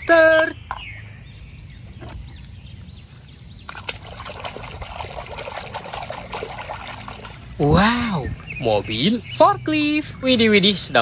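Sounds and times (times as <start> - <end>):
water splashing and trickling: 3.1 - 11.0.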